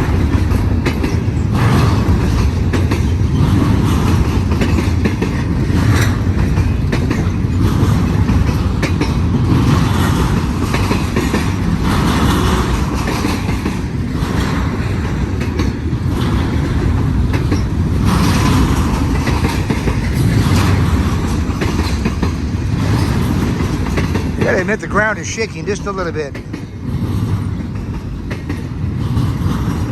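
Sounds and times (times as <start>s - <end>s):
freight train wheels rumbling: 0.0s - 29.9s
wheels clickety-clack: 0.0s - 29.9s.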